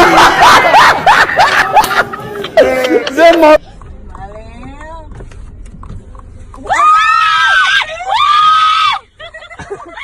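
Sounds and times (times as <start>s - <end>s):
high-pitched screams: 6.6s - 9.0s.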